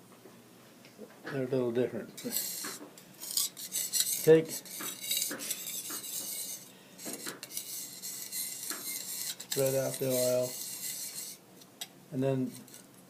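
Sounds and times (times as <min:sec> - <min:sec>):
knife scraping sharpening stone: 0:02.2 - 0:11.4, 0:12.5 - 0:12.9.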